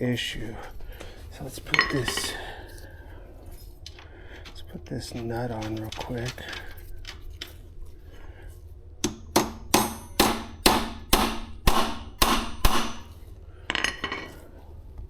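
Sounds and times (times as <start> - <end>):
hammer striking metal: 9.0 - 13.1.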